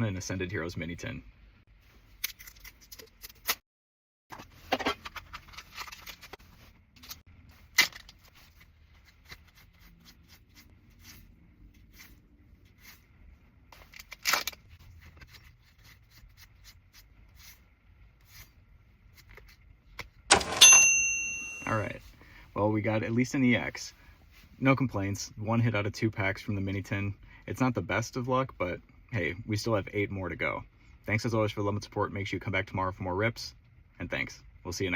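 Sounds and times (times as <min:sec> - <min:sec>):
loud ringing chime: 0:20.3 - 0:21.8.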